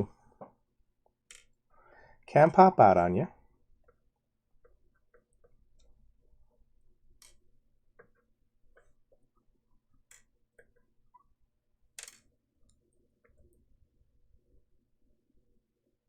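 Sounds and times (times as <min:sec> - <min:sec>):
small parts clicking and tapping: 0:01.0 - 0:01.6, 0:03.8 - 0:13.7.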